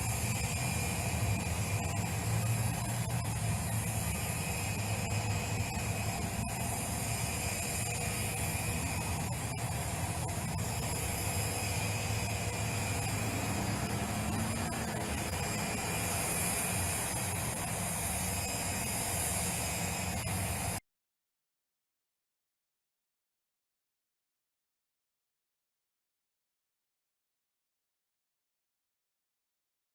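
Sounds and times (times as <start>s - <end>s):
engine humming and hissing: 0.0s - 20.8s
faint steady whining tones: 0.0s - 20.8s.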